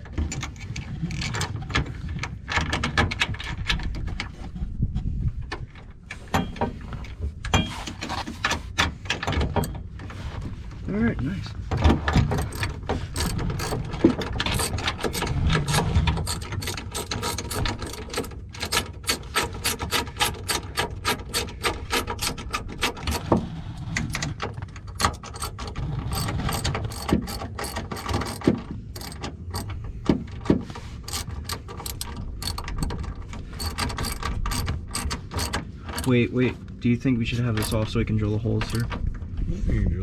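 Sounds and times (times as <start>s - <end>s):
socket ratchet clicking: 12.3s - 23.4s, 24.9s - 29.9s, 31.0s - 36.2s, 37.6s - 37.9s, 38.6s - 38.9s.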